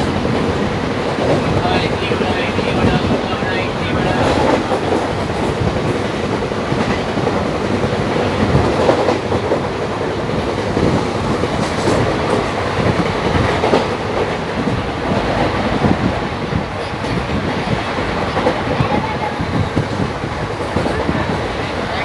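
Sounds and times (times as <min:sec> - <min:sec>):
train coach rumble: 0:00.0 - 0:22.0.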